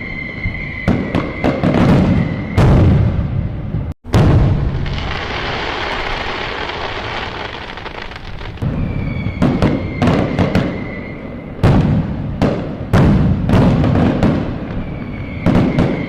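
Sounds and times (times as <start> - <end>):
high firework whistle: 0.0 - 3.2, 4.8 - 11.6, 14.5 - 16.0
fireworks bangs: 0.0 - 16.0
loud firework booms: 0.4 - 16.0
fireworks crackling: 4.1 - 10.8.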